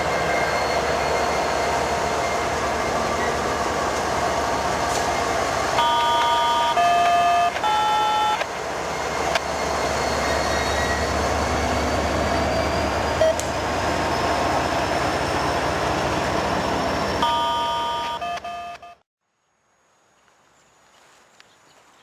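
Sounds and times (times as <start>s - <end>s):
diesel locomotives rumbling: 0.0s - 18.8s
electronic beep tones: 17.2s - 19.0s.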